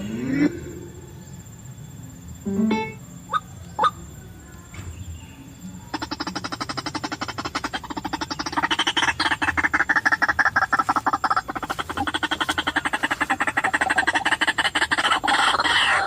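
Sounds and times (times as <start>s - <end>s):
waterhen calling rapid notes: 5.9s - 16.0s.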